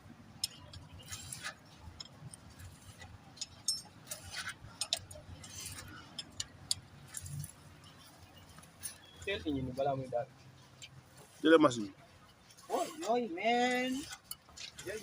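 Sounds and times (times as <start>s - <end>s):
tools and metal parts clicking: 0.3s - 9.2s, 13.8s - 15.0s.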